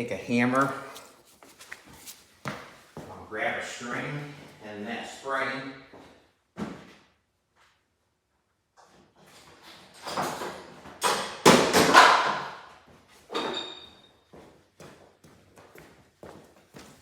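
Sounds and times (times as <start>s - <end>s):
metal tools clattering: 9.4s - 11.3s, 13.3s - 14.1s
short metallic ring: 13.4s - 14.1s.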